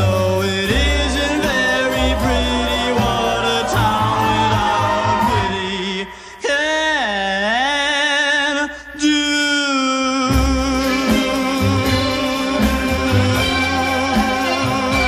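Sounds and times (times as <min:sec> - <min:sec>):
orchestra playing: 0:00.0 - 0:06.0, 0:10.3 - 0:15.0
man singing pop: 0:00.0 - 0:15.0.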